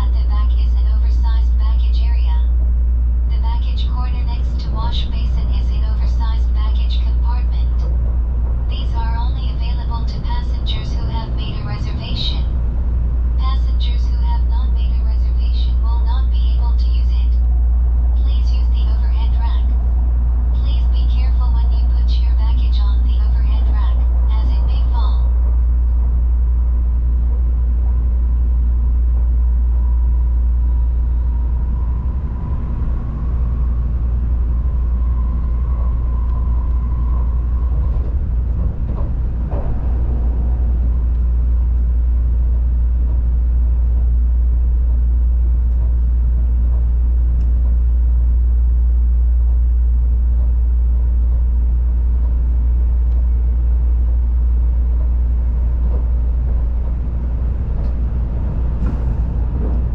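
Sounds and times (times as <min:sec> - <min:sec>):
faint steady whine: 0:00.0 - 0:59.9
train interior rumble: 0:00.0 - 0:59.9.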